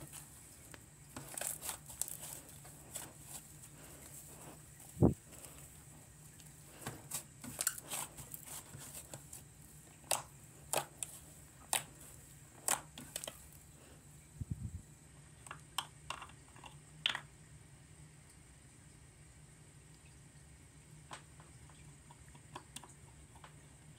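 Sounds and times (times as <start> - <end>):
slime popping and crackling: 1.2 - 3.4, 10.0 - 13.4.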